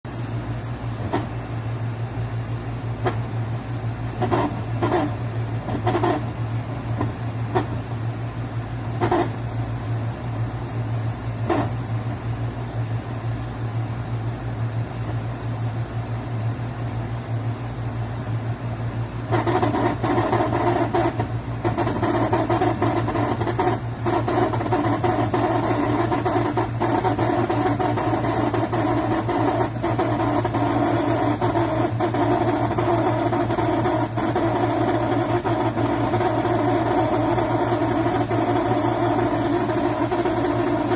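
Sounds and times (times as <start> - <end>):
air conditioner humming: 0.0 - 40.9
grinding noise: 4.2 - 6.4, 7.0 - 7.8, 9.0 - 9.4, 11.4 - 11.8, 19.3 - 40.9.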